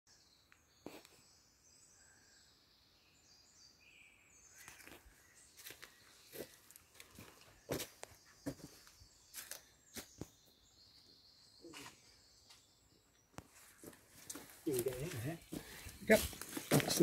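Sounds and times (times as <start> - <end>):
faint birdsong: 0.1 - 17.0
light rustling footsteps: 13.4 - 17.0.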